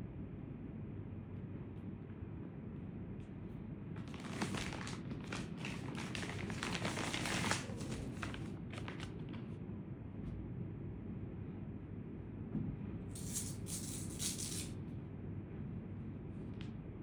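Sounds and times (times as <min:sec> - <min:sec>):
steady low hum: 0:00.0 - 0:17.0
plastic packaging crinkling: 0:04.0 - 0:09.4.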